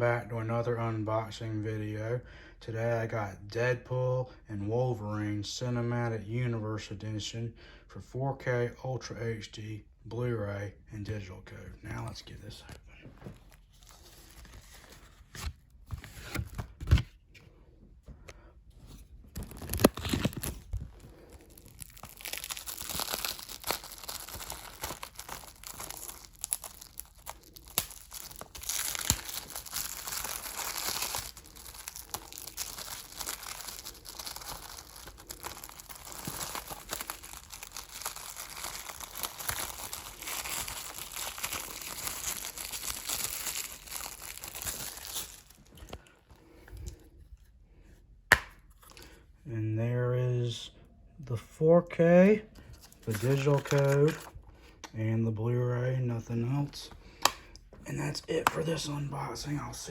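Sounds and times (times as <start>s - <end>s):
plastic wrapping tearing and crinkling: 19.3s - 46.1s, 52.8s - 54.3s.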